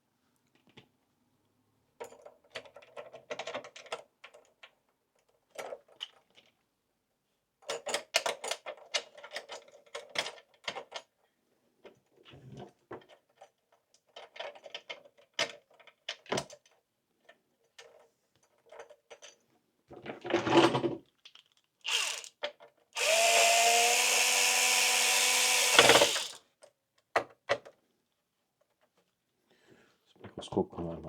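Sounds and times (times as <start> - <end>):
electric screwdriver whine: 21.9 - 22.3, 23.0 - 26.4.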